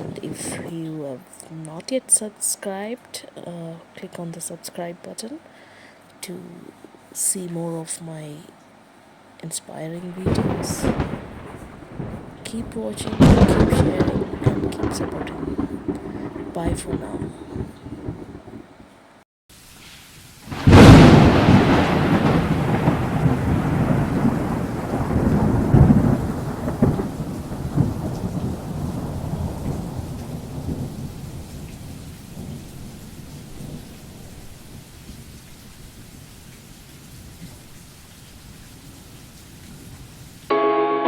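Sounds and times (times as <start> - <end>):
thunderclap rolling rumbles: 0.0 - 1.3, 10.1 - 19.0, 20.5 - 36.4
faint hiss of rain: 0.0 - 40.9.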